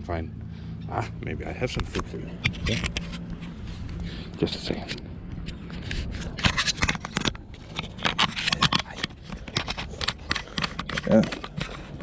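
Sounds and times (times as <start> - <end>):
hands rummaging through a bag: 5.5 - 12.0.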